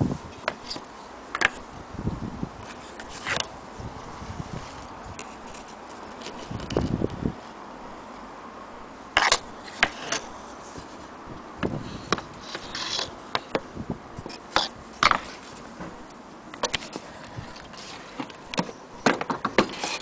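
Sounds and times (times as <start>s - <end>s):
clicks and knocks of wood and metal: 0.4s - 1.6s, 2.6s - 3.5s, 4.7s - 7.2s, 9.2s - 11.0s, 11.6s - 20.0s.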